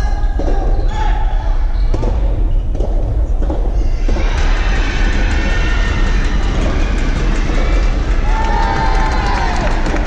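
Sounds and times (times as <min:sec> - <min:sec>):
steady low rumble: 0:01.6 - 0:10.0
crowd cheering and clapping: 0:04.0 - 0:10.0.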